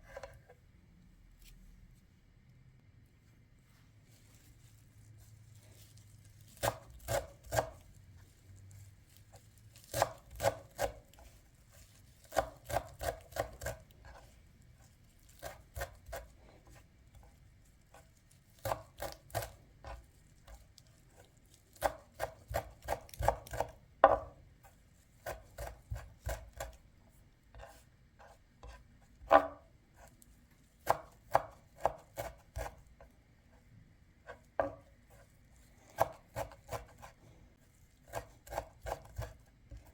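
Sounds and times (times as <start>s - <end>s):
knife chopping on cutting board: 6.6s - 7.9s, 9.8s - 14.3s, 15.3s - 16.8s, 18.6s - 24.4s, 25.2s - 26.8s, 27.6s - 30.1s, 30.8s - 33.1s, 34.2s - 35.3s, 35.9s - 37.2s, 38.0s - 39.9s.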